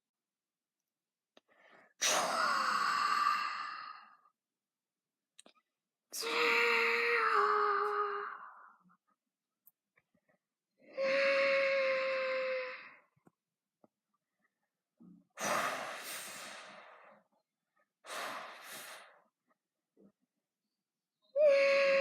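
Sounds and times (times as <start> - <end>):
creature cry held at one pitch: 21.4 - 22.0.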